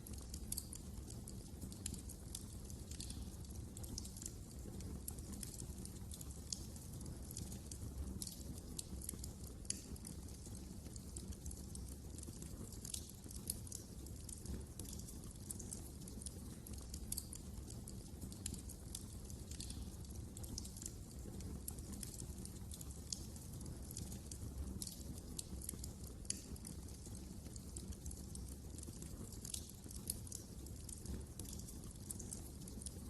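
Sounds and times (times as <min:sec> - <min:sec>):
wood fire crackling: 0:00.0 - 0:33.0.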